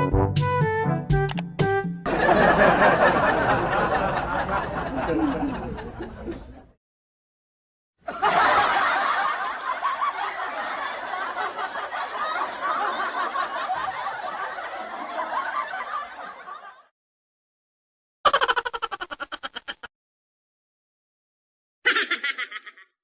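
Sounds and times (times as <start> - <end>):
many people laughing: 2.1 - 6.8, 8.0 - 16.9, 21.9 - 22.9.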